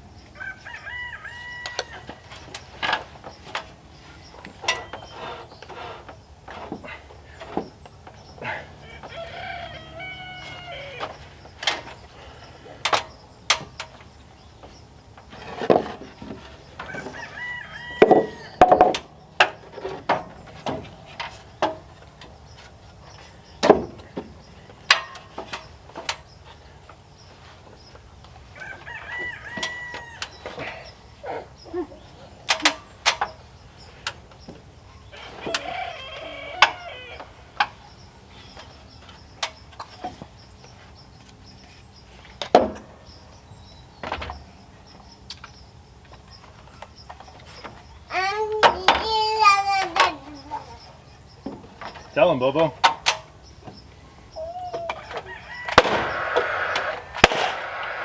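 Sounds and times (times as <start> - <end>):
rooster crowing: 0.4 - 2.4, 8.4 - 11.4, 16.8 - 18.7, 28.6 - 30.5, 35.1 - 37.5, 54.3 - 58.0
sharp knocks and bangs: 55.7 - 58.0.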